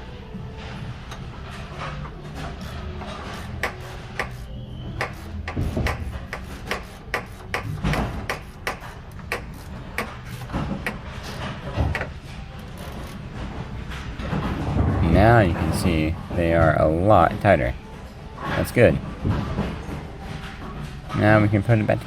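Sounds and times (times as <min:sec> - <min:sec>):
steady low hum: 0:00.0 - 0:22.0
wrenches clicking and clanking: 0:00.6 - 0:17.7.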